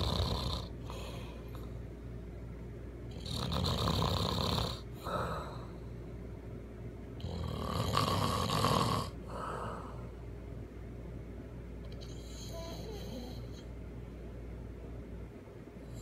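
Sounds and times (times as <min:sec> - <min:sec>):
man snoring loudly: 0:00.0 - 0:01.0, 0:03.2 - 0:05.3, 0:07.2 - 0:09.2.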